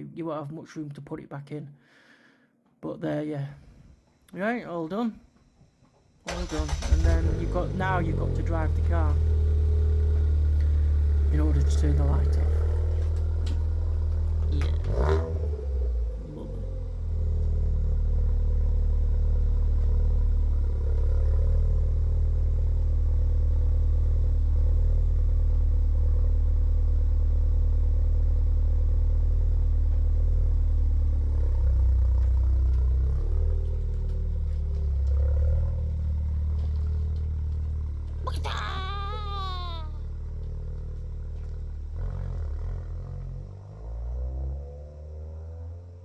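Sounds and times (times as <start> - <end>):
car engine running: 6.3 - 38.3, 39.8 - 44.2.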